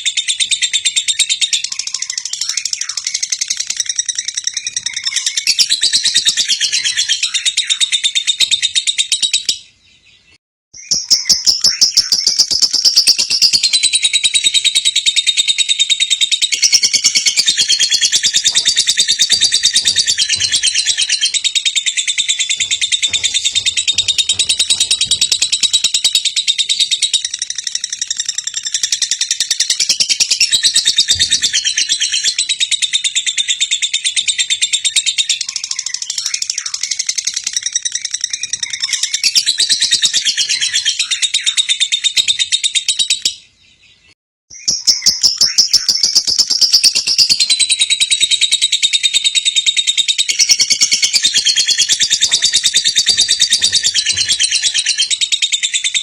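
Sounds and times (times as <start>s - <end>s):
lovebird chattering trill: 10.8s - 33.7s.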